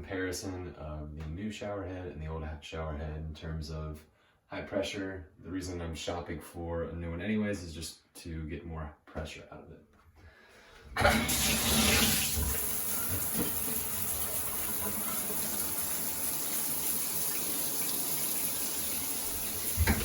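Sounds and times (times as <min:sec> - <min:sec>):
shower water spraying: 0:11.0 - 0:20.0.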